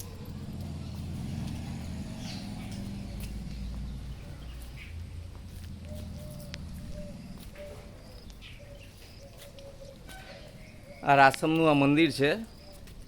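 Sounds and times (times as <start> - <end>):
low outdoor rumble: 0.0 - 8.7.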